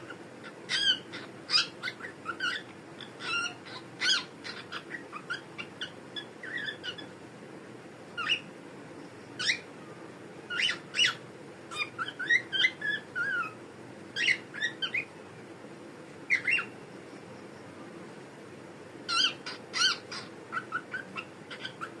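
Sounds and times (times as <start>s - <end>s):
cockatiel chirping and calling: 0.0s - 7.1s, 8.2s - 8.5s, 9.4s - 9.7s, 10.5s - 13.6s, 14.2s - 15.1s, 16.3s - 16.8s, 19.1s - 22.0s
faint low hum: 0.0s - 22.0s.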